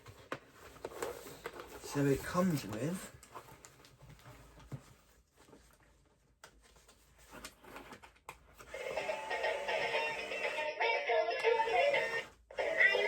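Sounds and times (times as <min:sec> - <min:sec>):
toy playing music with singing: 0:08.7 - 0:13.0.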